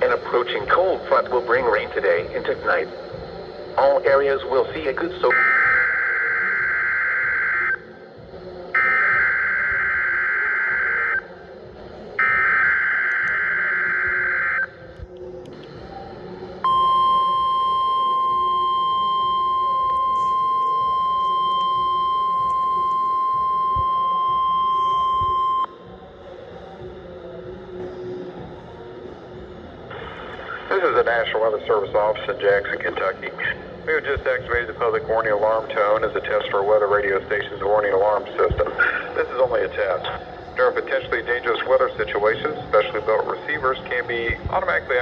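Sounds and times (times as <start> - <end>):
steady high alarm beep: 5.2 - 7.9, 8.7 - 11.3, 12.2 - 14.8, 16.6 - 25.8.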